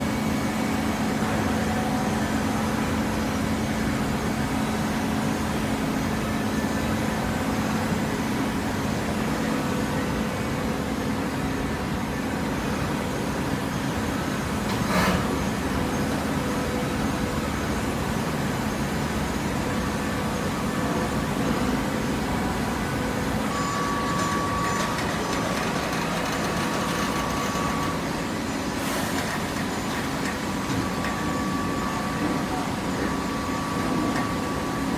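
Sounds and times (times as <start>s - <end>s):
baling press motor humming: 14.0s - 34.9s.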